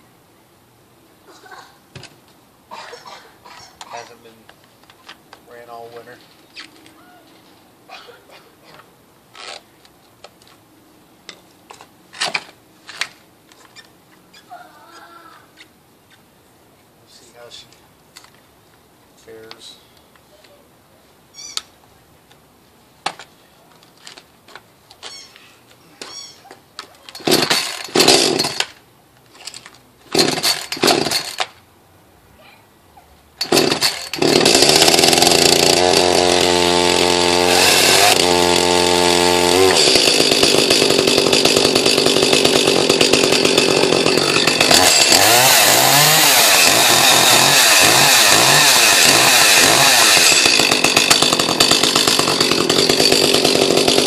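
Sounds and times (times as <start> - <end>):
chainsaw engine running: 27.2 - 28.7, 30.1 - 31.5, 33.4 - 54.0.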